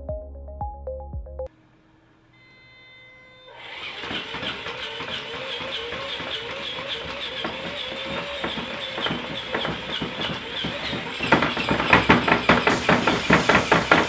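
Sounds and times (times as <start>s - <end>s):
small motor whine: 2.3s - 11.6s
rapid repeated tapping: 7.0s - 14.0s.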